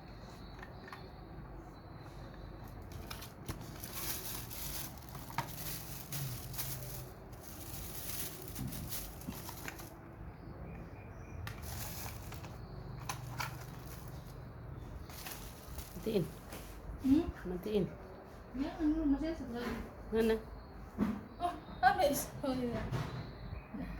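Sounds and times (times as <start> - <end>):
packaging rustling and crinkling: 2.7 - 10.0, 11.5 - 14.4, 15.0 - 16.5.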